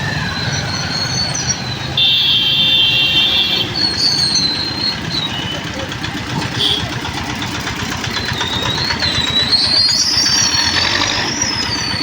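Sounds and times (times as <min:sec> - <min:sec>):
vehicle engines running: 0:00.0 - 0:12.0
thin high squeal: 0:08.3 - 0:12.0.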